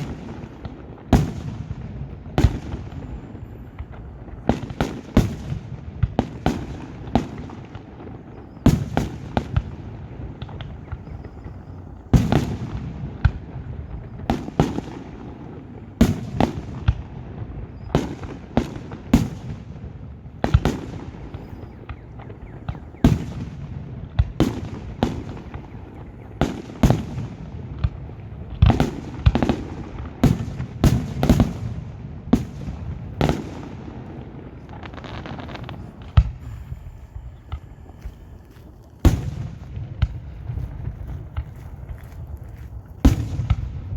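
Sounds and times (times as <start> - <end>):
fireworks bursting: 0.0 - 43.9
rumbling echo: 30.0 - 43.9.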